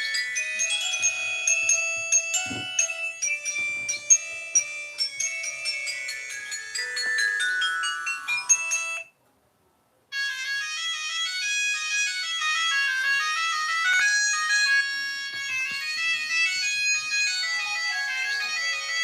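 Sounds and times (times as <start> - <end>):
mobile phone ringtone melody: 0.0 - 9.1, 10.1 - 19.0
quick reedy ringtone notes: 0.0 - 9.1.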